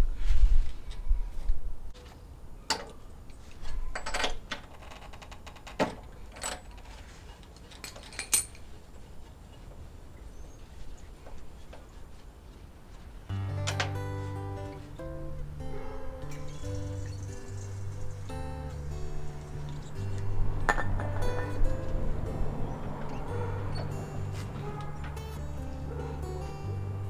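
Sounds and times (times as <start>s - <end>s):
metal tools clinking: 6.2s - 9.2s, 15.7s - 22.0s
strummed acoustic guitar music: 13.3s - 27.0s.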